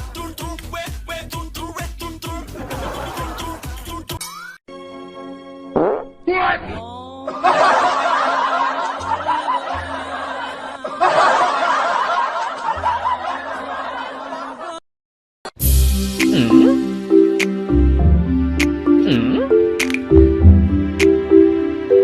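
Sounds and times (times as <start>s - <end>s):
background music: 0.0s - 14.6s, 15.6s - 22.0s
audience laughter: 2.5s - 4.0s, 7.3s - 14.8s.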